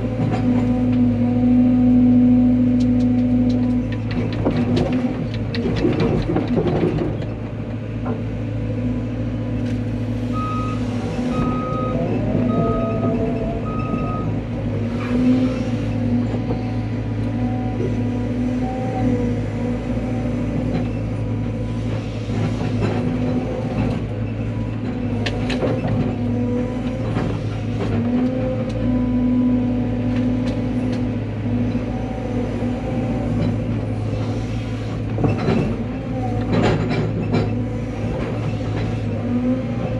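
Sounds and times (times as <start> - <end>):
excavator diesel engine: 0.0 - 39.9
short beeps: 10.4 - 14.3.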